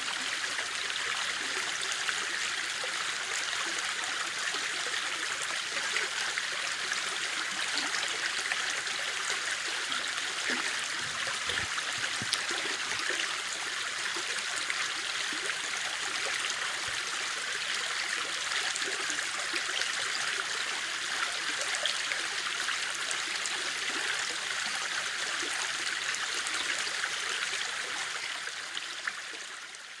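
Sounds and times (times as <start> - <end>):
river water flowing over rocks: 5.2 - 27.6.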